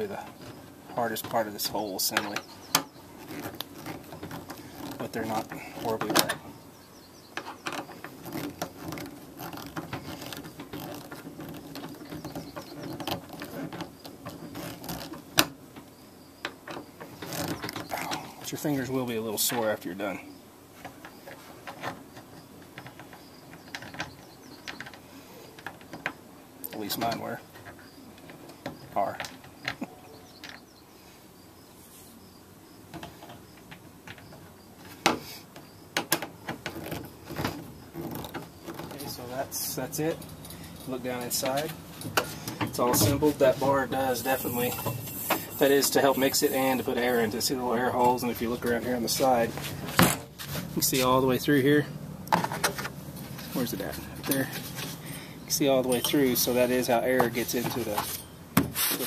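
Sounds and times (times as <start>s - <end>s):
faint insect chirping: 0.0s - 58.7s
plastic parts rattling: 7.6s - 15.4s.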